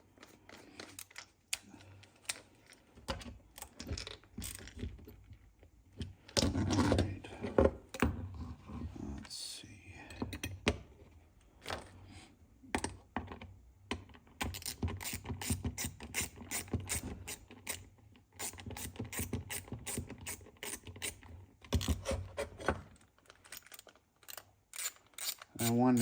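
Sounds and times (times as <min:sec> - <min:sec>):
ratchet clicking: 0:24.3 - 0:26.0.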